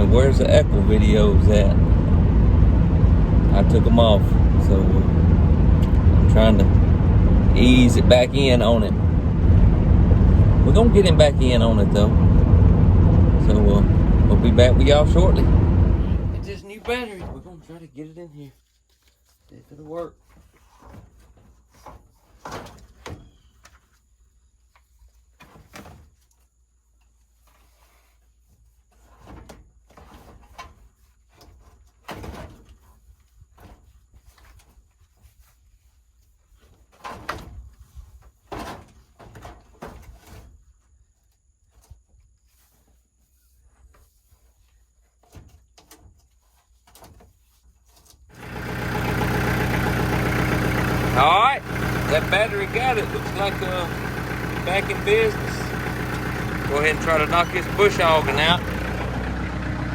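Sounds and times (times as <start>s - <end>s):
tractor diesel engine starting: 0.0s - 16.6s, 48.3s - 59.9s.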